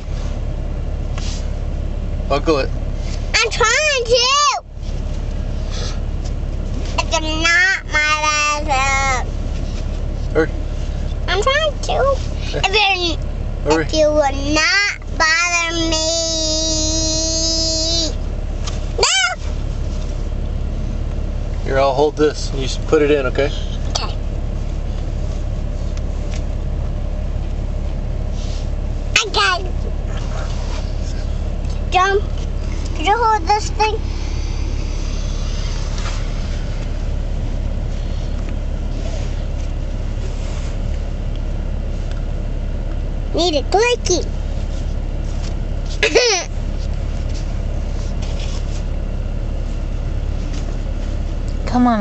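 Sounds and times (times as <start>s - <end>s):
car engine idling: 0.0s - 52.0s
girl whining: 19.0s - 19.4s, 46.0s - 46.5s.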